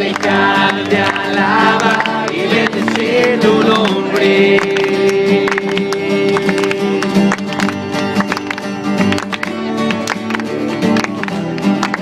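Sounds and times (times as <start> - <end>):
acoustic guitar strumming: 0.0 - 12.0.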